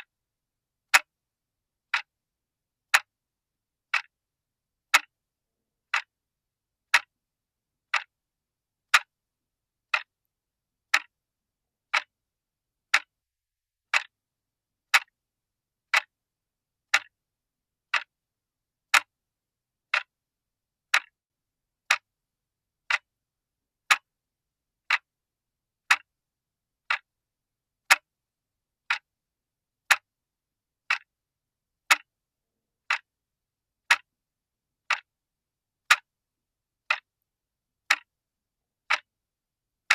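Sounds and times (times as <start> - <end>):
clock ticking: 0.9 - 1.1, 1.9 - 2.1, 2.9 - 3.1, 3.9 - 4.2, 4.9 - 5.2, 5.9 - 6.2, 6.9 - 7.2, 7.9 - 8.2, 8.9 - 9.2, 9.9 - 10.2, 10.9 - 11.2, 11.9 - 12.2, 12.9 - 13.2, 13.9 - 14.2, 14.9 - 15.2, 15.9 - 16.2, 16.9 - 17.2, 17.9 - 18.2, 18.9 - 19.2, 19.9 - 20.2, 20.9 - 21.2, 21.9 - 22.1, 22.8 - 23.2, 23.9 - 24.1, 24.9 - 25.1, 25.9 - 26.1, 26.8 - 27.1, 27.9 - 28.1, 28.9 - 29.1, 29.9 - 30.1, 30.9 - 31.1, 31.9 - 32.1, 32.9 - 33.1, 33.9 - 34.1, 34.9 - 35.1, 35.9 - 36.1, 36.8 - 37.2, 37.8 - 38.2, 38.8 - 39.1.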